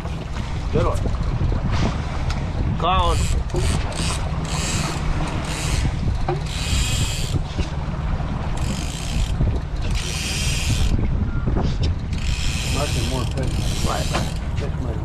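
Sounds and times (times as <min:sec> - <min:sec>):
steady low rumble: 0:00.0 - 0:15.0
fishing reel ratcheting: 0:03.2 - 0:07.5, 0:08.6 - 0:11.0, 0:12.1 - 0:14.5.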